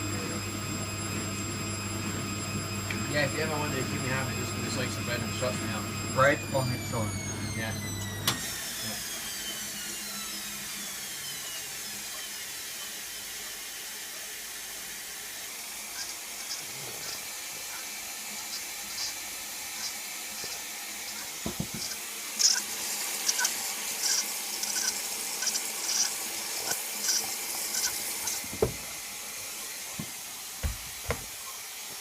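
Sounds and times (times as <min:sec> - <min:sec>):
water rushing into drum: 0:26.7 - 0:29.1
dull knocks: 0:28.5 - 0:28.8, 0:30.0 - 0:31.3.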